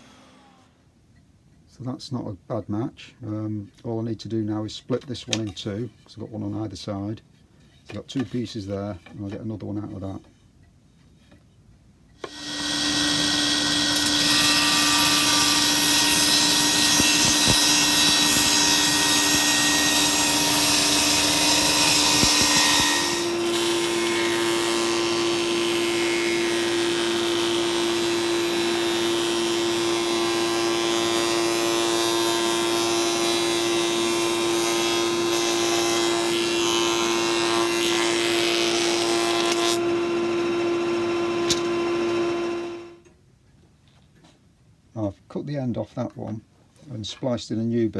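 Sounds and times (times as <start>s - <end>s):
power saw cutting wood: 0.0s - 0.7s, 12.2s - 43.0s
saw motor hum: 12.2s - 43.0s.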